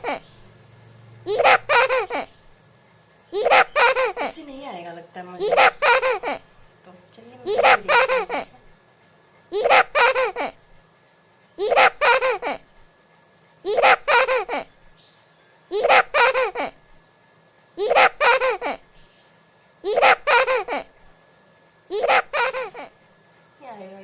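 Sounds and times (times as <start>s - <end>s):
short high-pitched laugh: 1.3s - 2.3s, 11.6s - 12.6s, 21.9s - 22.9s.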